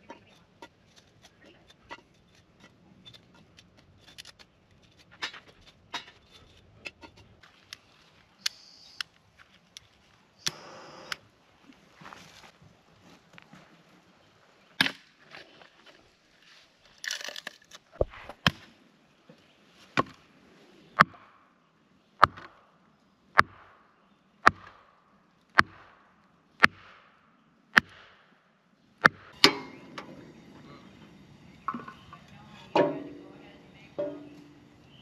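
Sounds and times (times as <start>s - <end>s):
chopping on wood: 24.4s - 24.8s, 25.6s - 26.0s, 26.6s - 27.1s, 27.8s - 28.2s.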